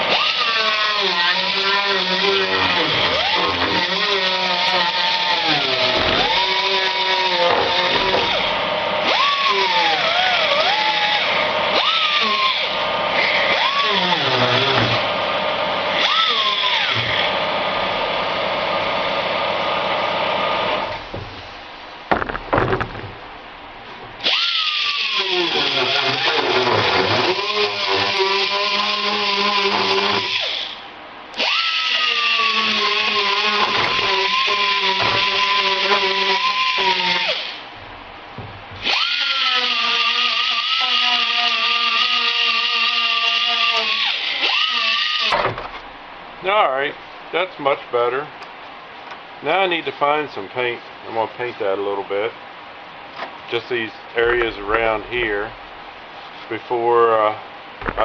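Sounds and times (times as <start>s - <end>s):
angle grinder sanding whine: 0.0s - 11.3s, 24.0s - 30.8s, 31.8s - 45.4s.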